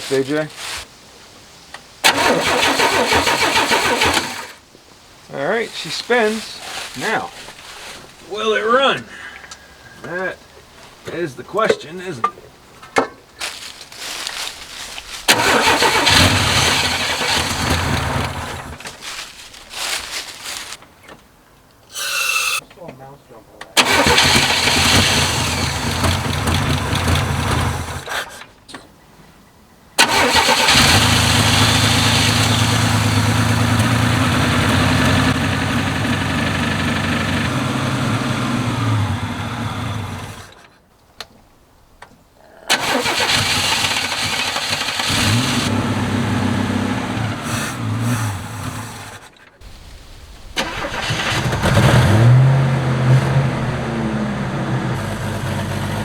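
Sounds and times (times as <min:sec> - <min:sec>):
engine cranking on starter: 0:02.0 - 0:04.6, 0:15.2 - 0:19.0, 0:23.8 - 0:28.1, 0:30.0 - 0:40.7, 0:42.7 - 0:56.0.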